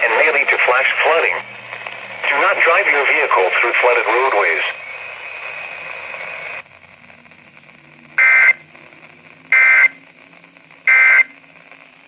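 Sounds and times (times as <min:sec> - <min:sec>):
faint radio hiss: 0:00.0 - 0:12.0
warbling digital data squawks: 0:08.2 - 0:08.6.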